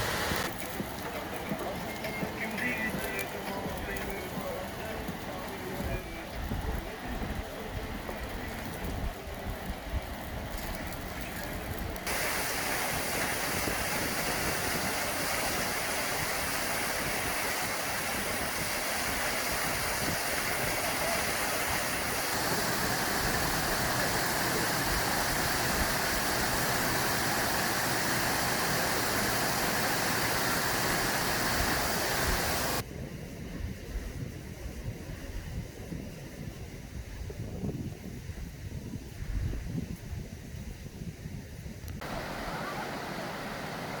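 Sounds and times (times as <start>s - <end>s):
waterfall rushing: 0.0s - 8.6s, 12.1s - 32.8s, 42.0s - 44.0s.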